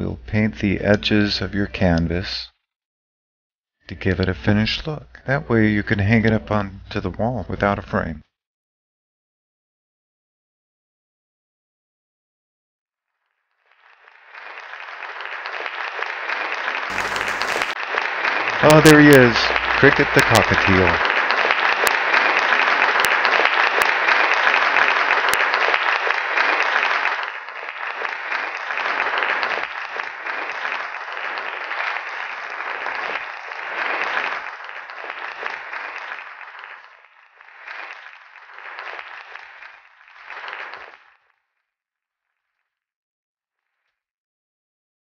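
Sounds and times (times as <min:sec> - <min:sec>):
crowd applause: 0:13.6 - 0:41.3.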